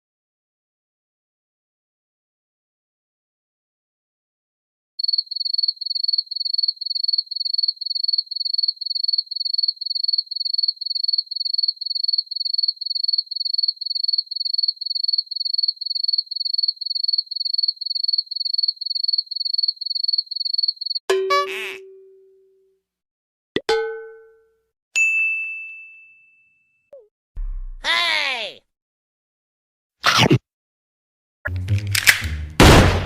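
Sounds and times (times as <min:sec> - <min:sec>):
cricket chirping: 0:05.0 - 0:21.0.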